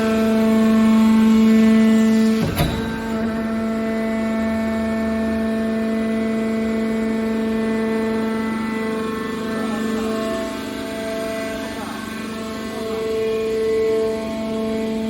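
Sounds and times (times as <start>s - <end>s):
hydraulic pump humming: 1.3s - 7.9s
sharp machine clunk: 2.3s - 4.4s.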